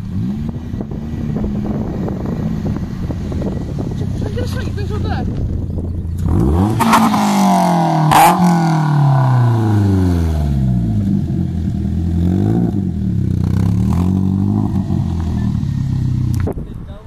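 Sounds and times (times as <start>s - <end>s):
car engine revs dropping: 5.4s - 12.9s.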